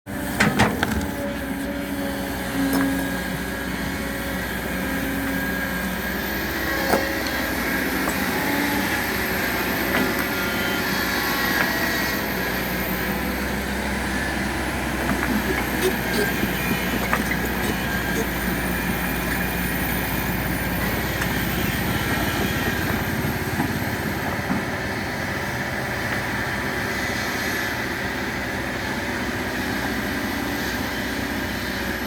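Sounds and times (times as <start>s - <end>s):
diesel engine running: 0.1s - 32.0s.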